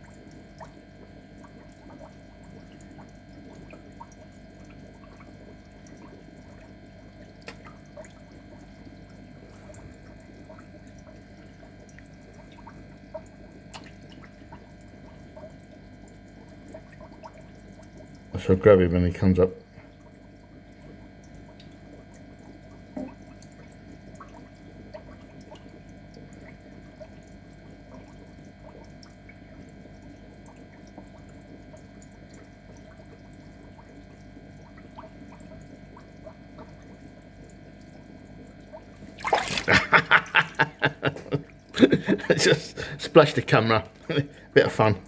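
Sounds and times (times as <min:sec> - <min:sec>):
water trickling: 0:00.0 - 0:18.7, 0:19.6 - 0:45.0
fish splashing at surface: 0:38.9 - 0:43.0.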